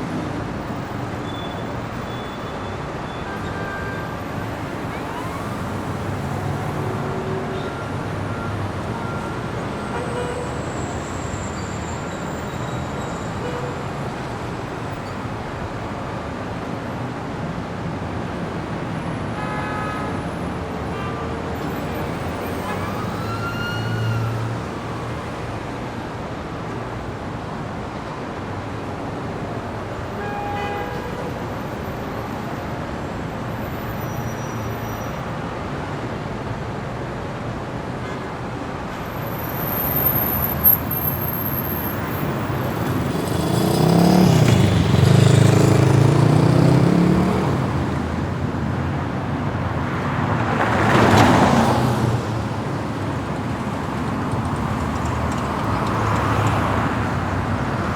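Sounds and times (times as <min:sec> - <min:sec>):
passing cars hum: 0:04.1 - 0:19.4, 0:38.5 - 0:57.9
heavy vehicle engine passing: 0:40.8 - 0:57.9
vehicle rushing by: 0:41.9 - 0:57.9.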